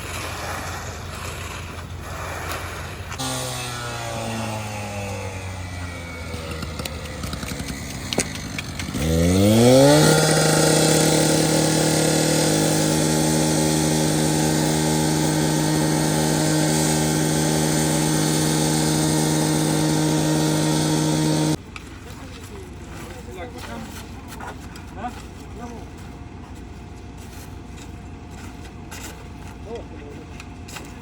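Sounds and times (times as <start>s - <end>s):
small engine revving: 2.2s - 21.6s.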